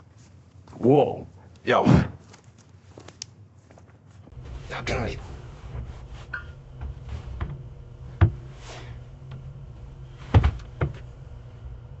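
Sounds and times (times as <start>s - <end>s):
low steady hum: 0.0s - 12.0s
sharp knocks: 10.2s - 11.1s.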